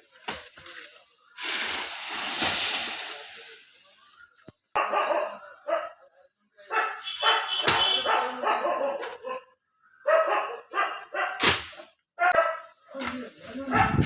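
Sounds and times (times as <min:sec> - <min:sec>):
dog barking: 0:04.7 - 0:06.1, 0:06.7 - 0:11.4, 0:12.2 - 0:12.8, 0:13.6 - 0:14.0.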